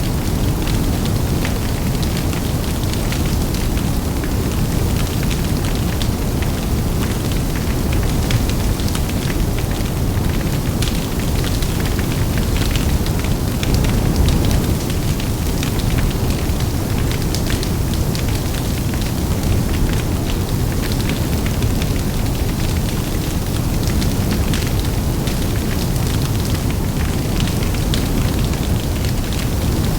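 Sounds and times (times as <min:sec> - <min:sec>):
low rumble of flames: 0:00.0 - 0:29.9
wood crackling and popping: 0:10.8 - 0:21.8.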